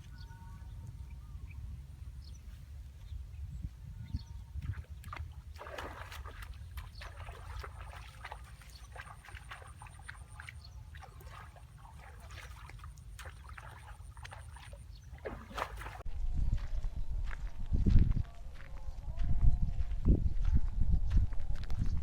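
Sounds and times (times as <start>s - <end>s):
water splashing and sloshing: 4.5s - 16.1s.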